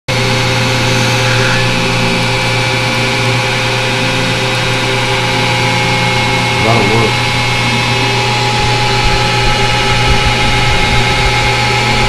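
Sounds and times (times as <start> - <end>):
lathe motor hum with whine: 0.1 - 12.0.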